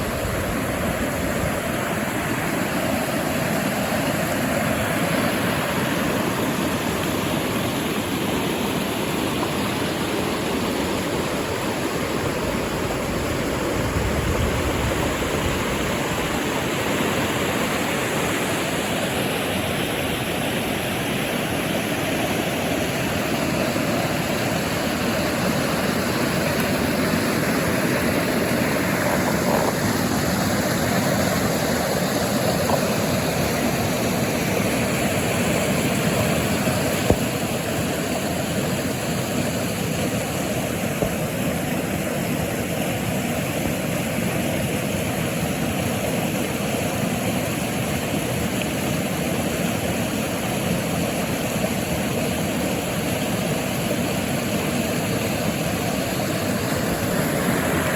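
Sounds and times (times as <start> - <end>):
steady rushing noise: 11.1 - 18.7.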